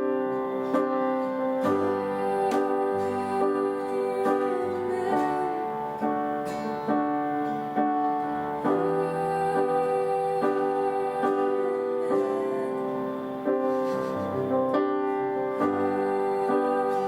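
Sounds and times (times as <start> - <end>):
guitar: 0.0 - 17.0
piano or keyboard chords: 0.0 - 17.0.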